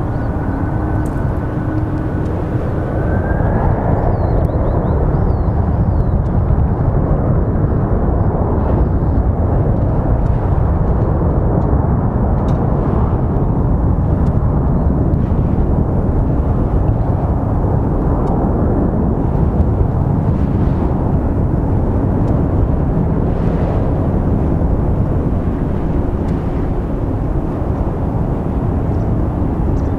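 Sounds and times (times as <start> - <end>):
jet airliner taking off: 0.0 - 10.0.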